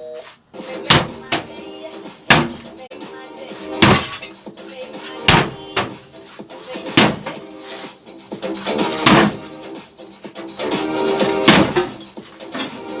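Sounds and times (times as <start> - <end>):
background music: 0.0 - 13.0
sledgehammer blows: 8.7 - 9.5, 11.2 - 12.8.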